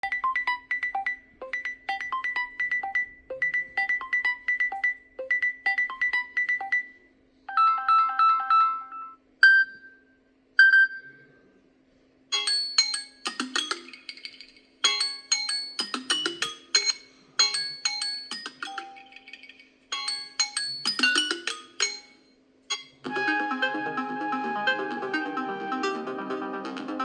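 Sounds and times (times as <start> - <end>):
mallet-like ringtone melody: 0.0 - 7.0, 12.4 - 26.5.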